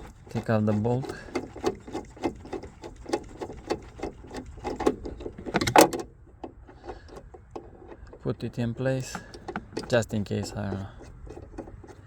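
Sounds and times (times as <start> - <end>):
metal clatter: 0.0 - 8.3, 8.9 - 12.0.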